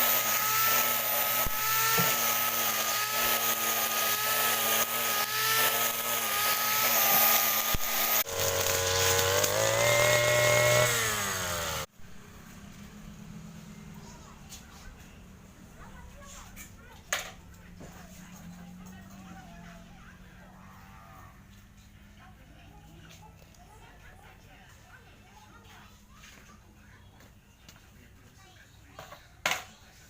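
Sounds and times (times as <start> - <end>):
grass trimmer motor running: 0.0 - 11.9.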